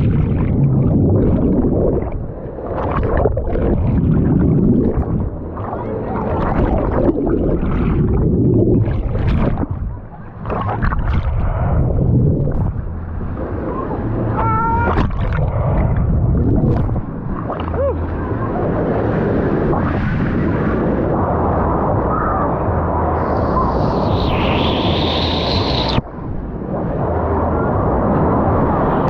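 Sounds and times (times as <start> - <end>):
waves surging in pool: 0.0 - 29.0
crowd of voices: 17.6 - 24.0.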